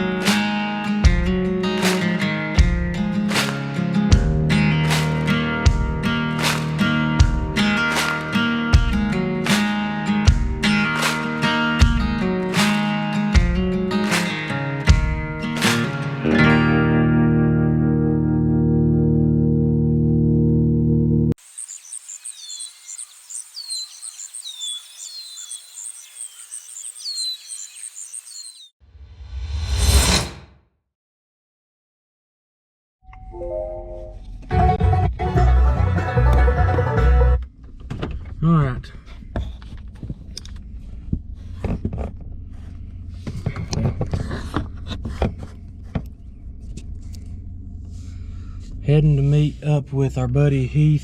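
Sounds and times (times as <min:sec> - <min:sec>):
birds whistling: 0:21.4 - 0:28.7
high bird chirping: 0:21.4 - 0:28.7.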